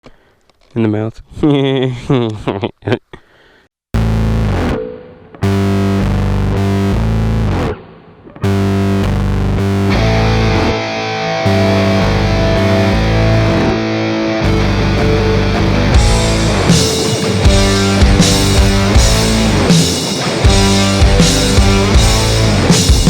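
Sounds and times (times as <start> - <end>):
distorted electric guitar chords: 4.0 - 23.0
rock band with cymbals: 11.5 - 23.0.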